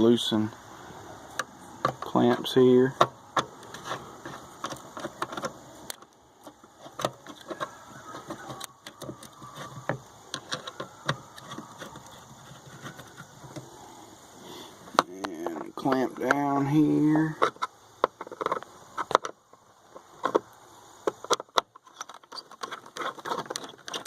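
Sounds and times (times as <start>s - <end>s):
metal and plastic knocking: 1.8s - 2.1s.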